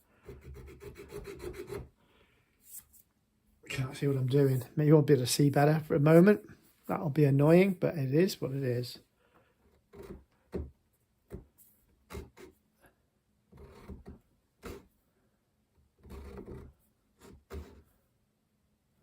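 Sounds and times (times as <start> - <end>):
checkering tool rasping on wood: 0.0 - 1.9, 9.6 - 10.7, 12.0 - 12.5, 13.5 - 14.9, 16.0 - 17.8.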